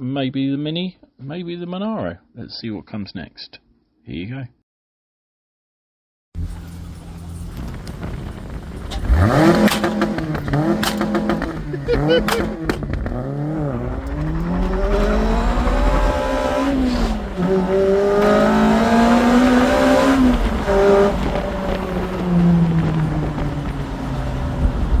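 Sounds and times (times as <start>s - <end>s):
car engine accelerating: 6.4s - 25.0s.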